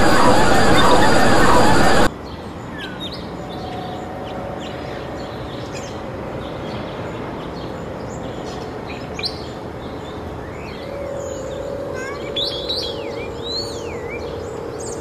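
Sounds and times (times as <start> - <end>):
steady rushing noise: 0.0 - 2.1.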